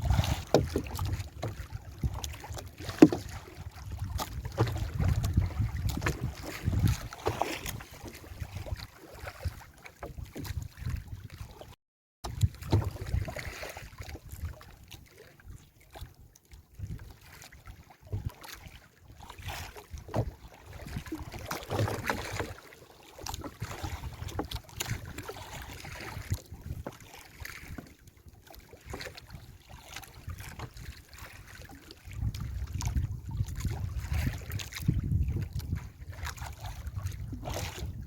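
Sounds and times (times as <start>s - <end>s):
water splashing against boat: 0.0s - 38.0s
wind gusting on microphone: 3.8s - 7.8s, 32.1s - 38.0s.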